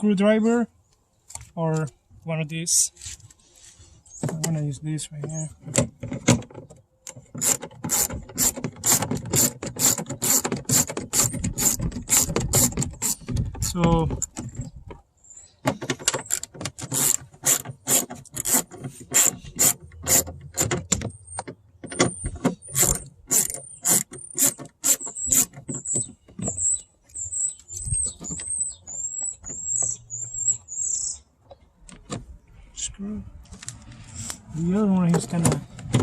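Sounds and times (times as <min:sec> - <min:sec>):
short high squeaks: 0:16.2 - 0:31.3.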